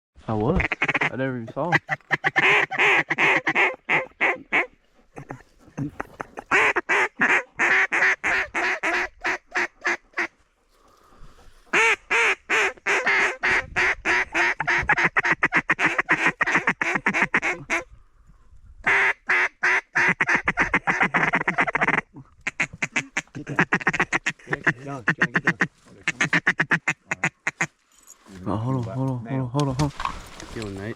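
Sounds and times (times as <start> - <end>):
duck call quacks: 0.6 - 5.4, 6.0 - 10.4, 11.7 - 17.9, 18.9 - 27.7.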